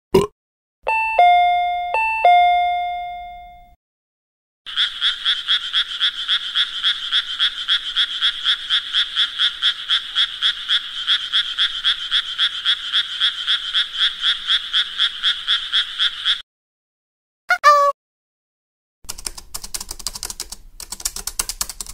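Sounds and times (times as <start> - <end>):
shrill pulsing bell ring: 0.9 - 3.8
two-tone doorbell chime: 0.9 - 3.8.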